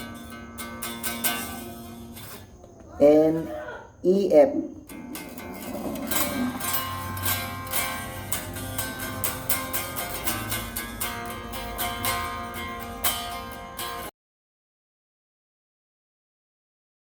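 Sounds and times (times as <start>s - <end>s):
electric guitar picked notes: 0.0s - 2.6s, 4.8s - 14.1s.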